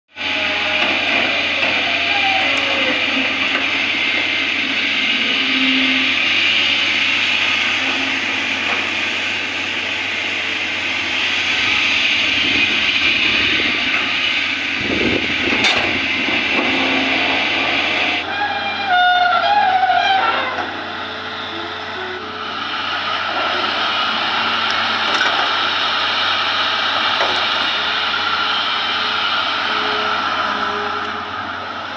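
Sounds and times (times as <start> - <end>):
excavator engine and hydraulics: 0.1 - 31.9
heavy low rumble: 6.6 - 18.3.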